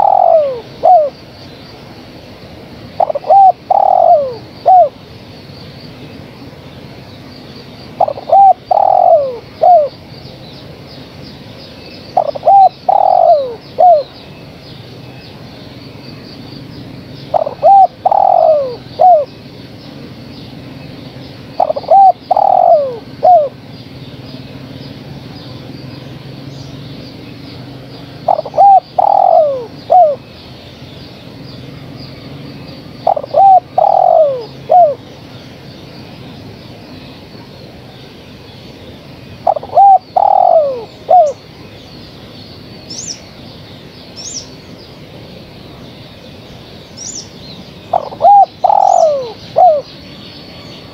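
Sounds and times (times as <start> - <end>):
dove cooing: 0.0 - 1.2, 3.0 - 5.0, 8.0 - 10.0, 12.2 - 14.1, 17.3 - 19.3, 21.6 - 23.6, 28.2 - 30.2, 33.0 - 35.0, 39.4 - 41.4, 47.9 - 49.9
small bird chirping: 7.1 - 50.9.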